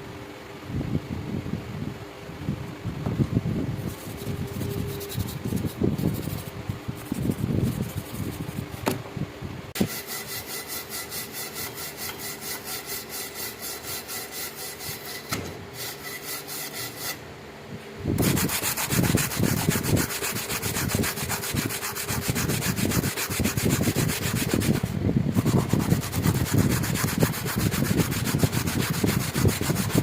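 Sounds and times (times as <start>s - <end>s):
abrasive scrubbing knife blade: 9.8s - 17.2s, 18.2s - 30.0s.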